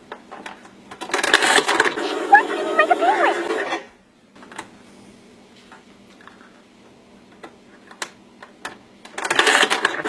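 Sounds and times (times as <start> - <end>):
loud sound from toy: 2.0 - 3.6.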